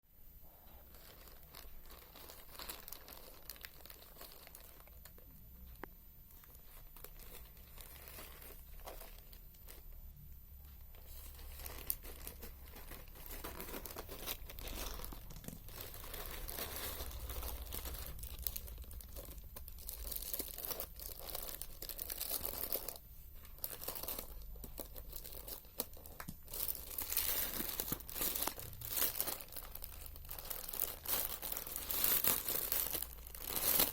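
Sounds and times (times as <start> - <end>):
packaging tearing and crinkling: 0.9 - 5.0, 11.0 - 33.9.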